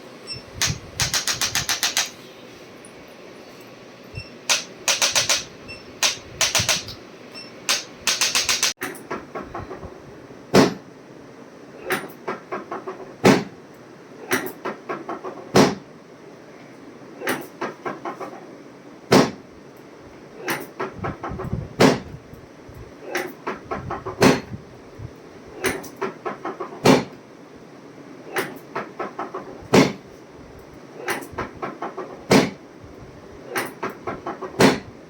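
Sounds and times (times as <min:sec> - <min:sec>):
sharp clicks and knocks: 0:00.6 - 0:02.2, 0:04.5 - 0:09.9.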